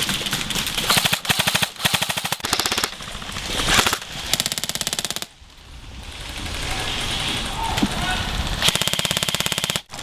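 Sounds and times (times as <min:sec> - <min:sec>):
toy guns firing rapid bursts: 0:00.9 - 0:02.9, 0:08.7 - 0:09.9.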